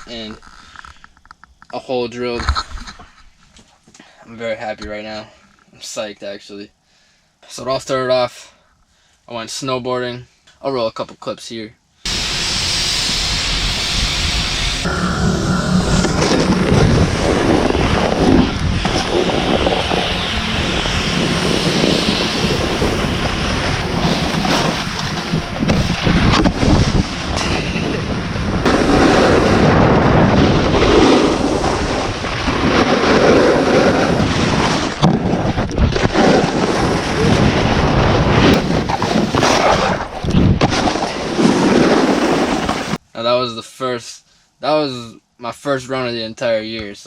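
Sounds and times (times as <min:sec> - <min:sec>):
wind buffeting microphone: 0:12.1 - 0:40.9.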